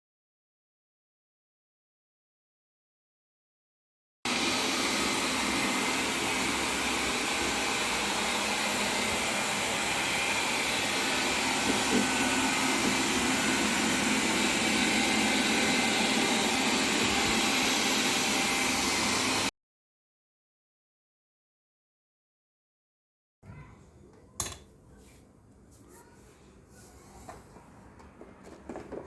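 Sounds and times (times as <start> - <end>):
small knocks: 27.3 - 29.0.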